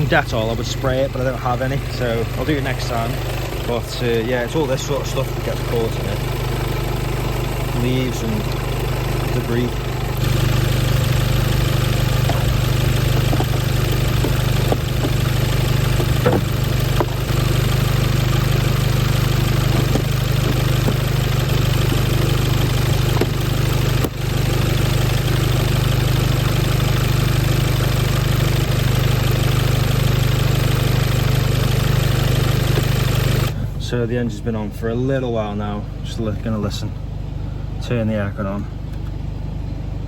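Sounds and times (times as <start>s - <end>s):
car engine idling: 0.0s - 40.0s.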